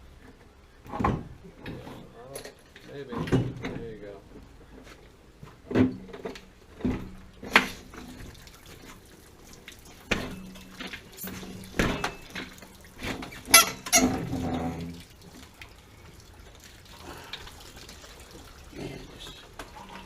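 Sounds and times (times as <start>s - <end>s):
water sloshing and trickling: 0.0s - 20.0s
metallic clanks and knocks: 0.9s - 4.0s, 10.1s - 14.7s.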